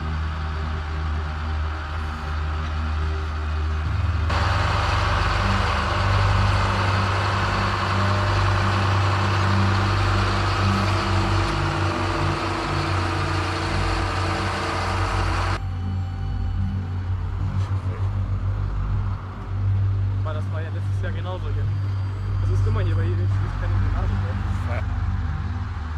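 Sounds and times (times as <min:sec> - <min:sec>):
diesel engine running: 0:00.0 - 0:25.9
rushing clattering noise: 0:04.0 - 0:15.6.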